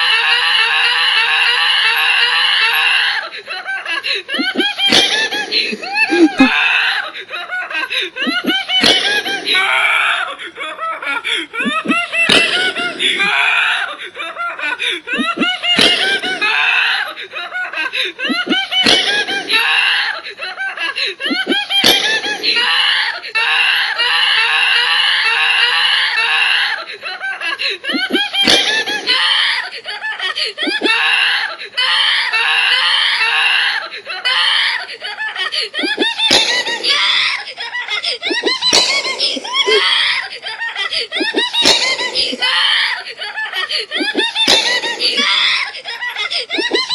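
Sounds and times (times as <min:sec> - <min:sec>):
woman laughing: 0:03.4 - 0:09.7, 0:10.6 - 0:22.7, 0:27.0 - 0:31.1, 0:35.0 - 0:46.9
screams: 0:15.1 - 0:20.4, 0:35.8 - 0:46.9.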